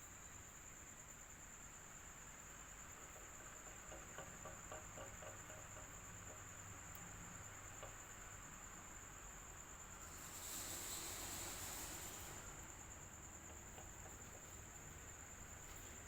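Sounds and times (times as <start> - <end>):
faint rapid ticks: 2.7 - 8.5, 10.0 - 16.0
electric fan running: 6.0 - 16.0.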